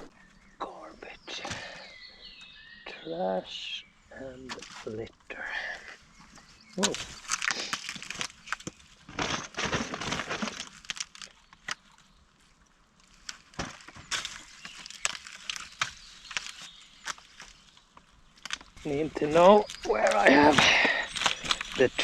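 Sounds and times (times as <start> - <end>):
dry debris crackling and snapping: 6.1 - 22.0.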